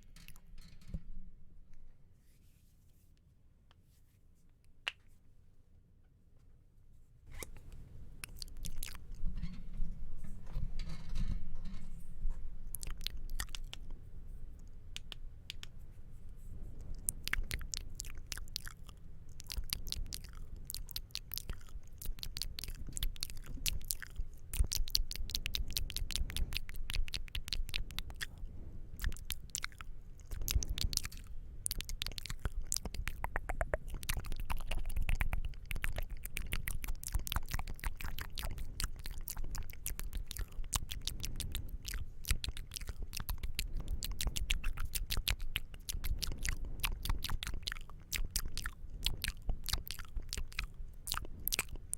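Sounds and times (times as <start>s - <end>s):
wet mouth clicks and smacks: 7.5s - 9.2s, 12.6s - 14.0s, 14.6s - 15.8s, 16.8s - 28.4s, 29.0s - 51.9s.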